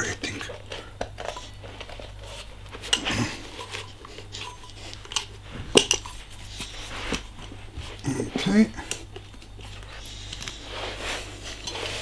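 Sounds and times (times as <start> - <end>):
steady low hum: 0.0 - 12.0
metal clinks and knocks: 4.3 - 7.5.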